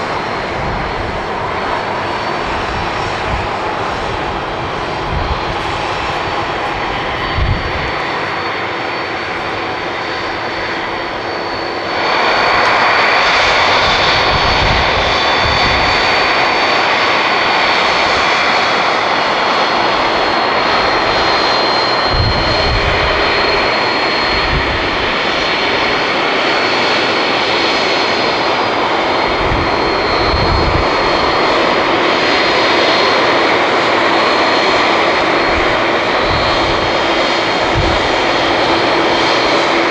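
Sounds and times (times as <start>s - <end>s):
thin steady whine: 0.0s - 16.5s
jet engines running: 0.0s - 39.9s
wind thumps on microphone: 2.4s - 11.4s, 13.3s - 16.3s, 22.1s - 23.7s, 37.6s - 38.2s.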